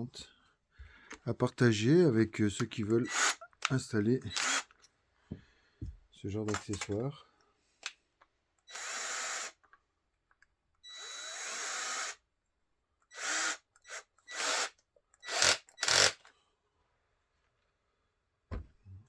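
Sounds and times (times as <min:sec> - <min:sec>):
power drill motor whine bursts: 0:08.7 - 0:09.5, 0:10.9 - 0:12.2, 0:13.1 - 0:16.1.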